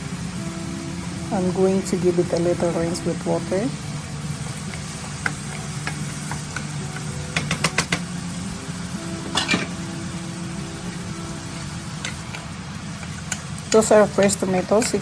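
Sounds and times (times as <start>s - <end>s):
soft simmering: 0.0s - 15.0s
spoon stirring in a pan: 4.3s - 8.2s, 10.8s - 15.0s
metal clinks on a pan: 9.3s - 9.8s.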